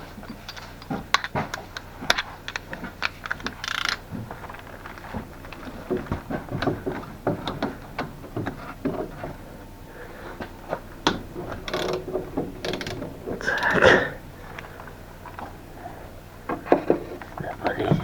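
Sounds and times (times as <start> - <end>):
ratchet wrench clicking: 2.1 - 4.0.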